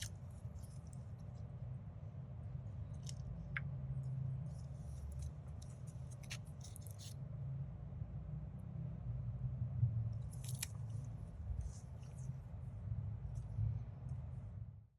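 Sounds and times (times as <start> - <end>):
small clicks and crinkles: 0.0 - 1.5, 2.8 - 7.2, 10.2 - 12.4
steady low hum: 0.0 - 14.9.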